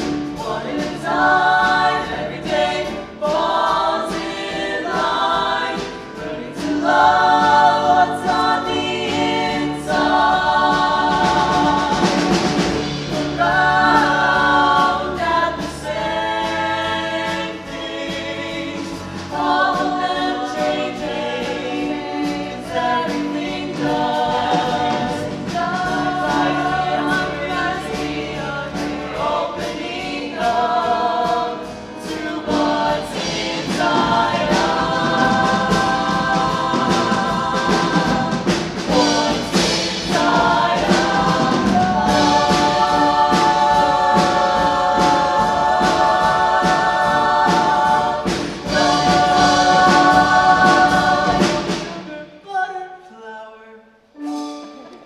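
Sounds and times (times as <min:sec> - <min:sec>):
steady beat: 0:00.0 - 0:52.1
choir singing: 0:00.0 - 0:55.0.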